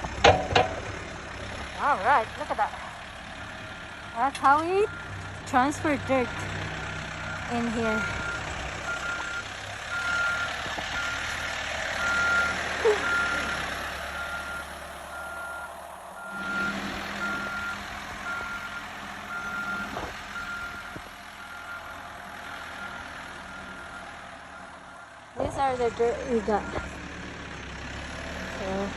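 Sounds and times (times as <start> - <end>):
backhoe engine rumble: 0.0 - 28.9
reverse alarm beeping: 7.2 - 11.3, 12.0 - 22.0.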